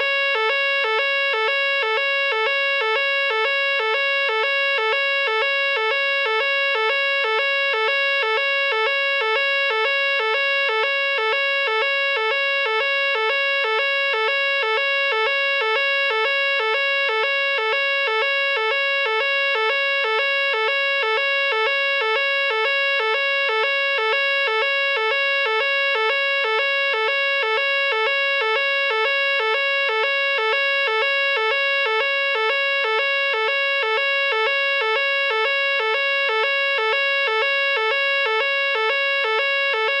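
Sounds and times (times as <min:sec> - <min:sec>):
pulsing electronic fire alarm: 0:00.0 - 0:40.0.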